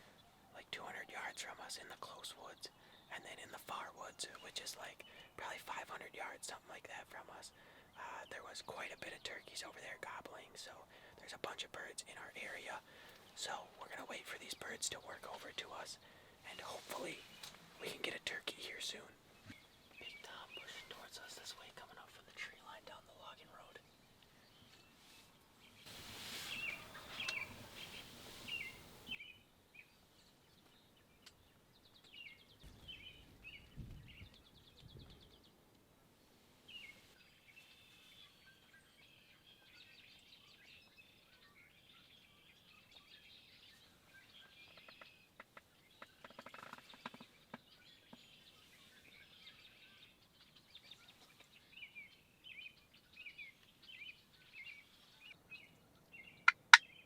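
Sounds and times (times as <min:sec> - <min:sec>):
faint songbirds chirping: 0:00.0 - 0:57.0
hiss: 0:25.9 - 0:26.8.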